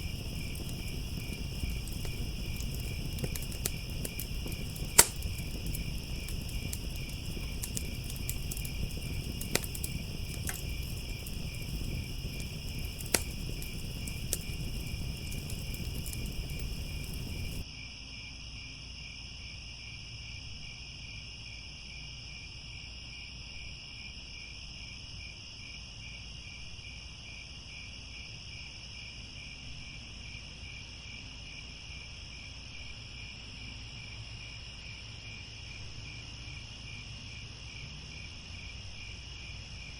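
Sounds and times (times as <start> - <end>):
wood fire crackling: 0.0 - 17.6
crickets chirping: 0.0 - 17.7, 30.6 - 39.9.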